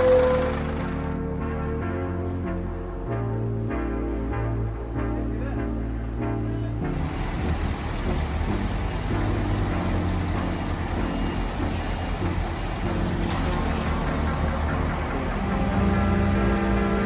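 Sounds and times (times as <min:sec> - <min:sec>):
heavy engine running: 0:00.0 - 0:01.4, 0:06.8 - 0:17.0.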